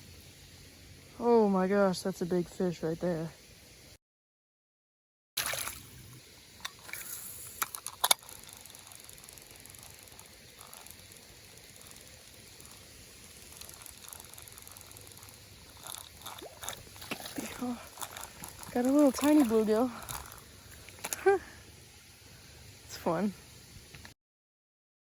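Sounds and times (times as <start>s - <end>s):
water noise: 5.4s - 24.1s
fishing reel ticking: 6.6s - 21.4s.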